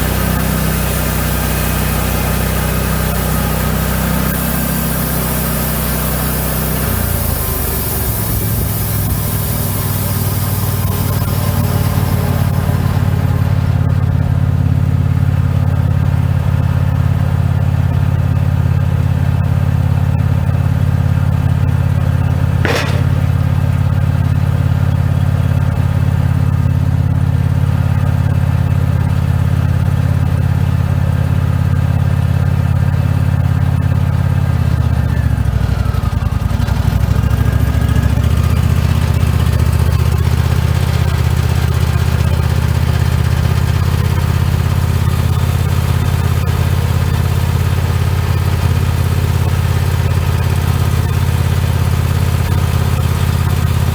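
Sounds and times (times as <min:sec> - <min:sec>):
sawmill engine running: 0:00.0 - 0:15.4, 0:21.4 - 0:25.2
sharp click: 0:22.7 - 0:23.7.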